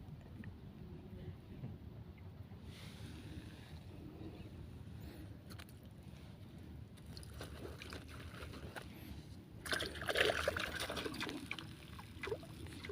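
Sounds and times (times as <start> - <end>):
water sloshing and splashing: 7.0 - 12.9.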